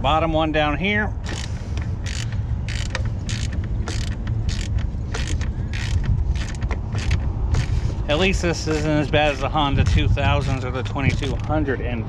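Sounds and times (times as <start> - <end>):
steady low rumble: 0.0 - 12.0
hand ratchet clicking: 1.2 - 8.0, 8.8 - 11.5.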